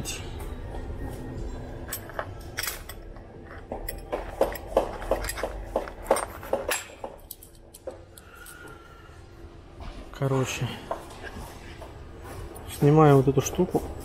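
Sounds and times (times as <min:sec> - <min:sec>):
metal tools clicking on metal: 0:01.8 - 0:08.8.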